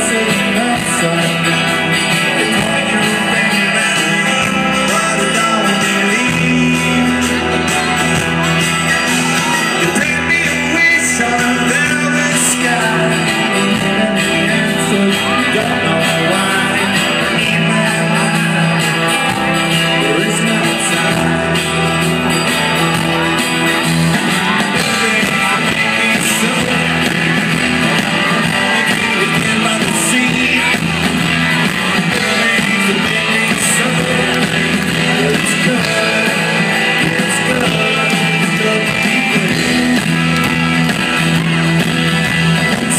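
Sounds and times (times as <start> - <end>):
person singing: 0.0 - 42.9
rock band playing: 0.0 - 42.9.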